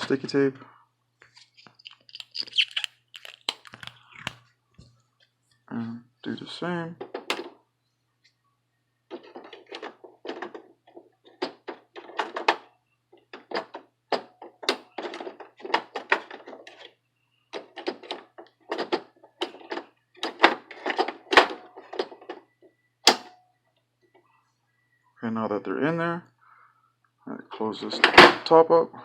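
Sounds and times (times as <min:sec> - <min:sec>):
plastic clicks and rustles: 0:01.2 - 0:05.6
printer latch snapping: 0:23.1 - 0:23.3.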